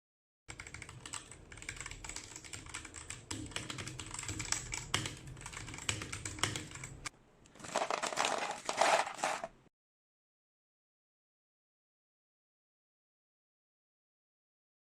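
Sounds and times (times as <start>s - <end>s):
mechanical keyboard typing: 0.5s - 9.5s.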